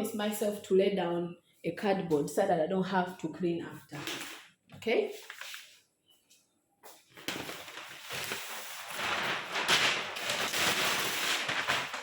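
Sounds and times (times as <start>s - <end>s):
cardboard scraping and crackling: 7.2s - 12.0s.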